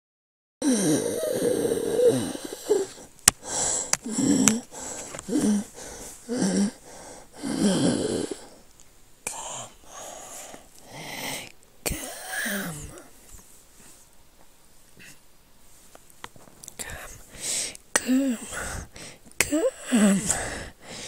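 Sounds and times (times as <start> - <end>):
rasping demonic groans and moans: 0.6 - 3.0, 4.0 - 6.8, 7.4 - 8.5.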